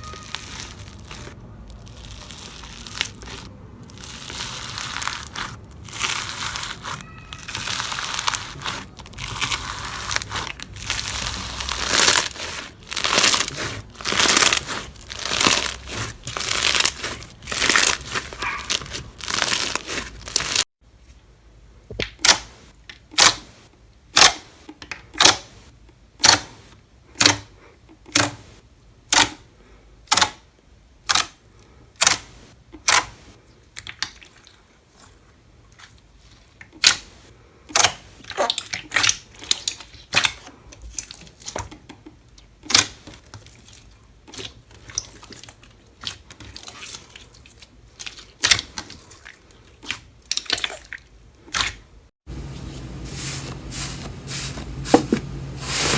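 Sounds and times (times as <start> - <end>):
slime popping and crackling: 0.1 - 20.7.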